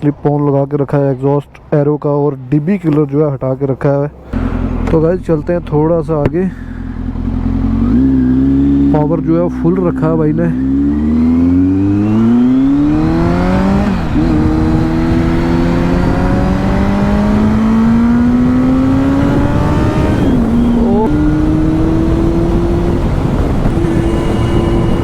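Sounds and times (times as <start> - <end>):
motorcycle engine accelerating: 4.3 - 25.0
wind rush: 11.1 - 25.0.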